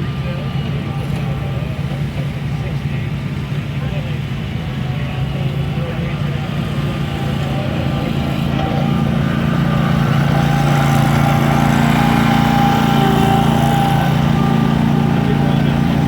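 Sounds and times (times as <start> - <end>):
faint whine: 0.0 - 16.0
mower engine running: 0.0 - 16.0.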